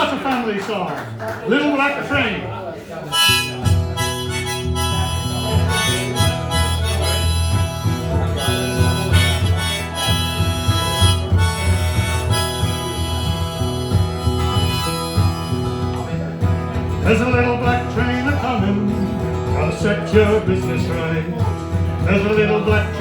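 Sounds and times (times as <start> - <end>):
harmonica melody: 3.1 - 16.9
guitar accompaniment: 3.1 - 23.0.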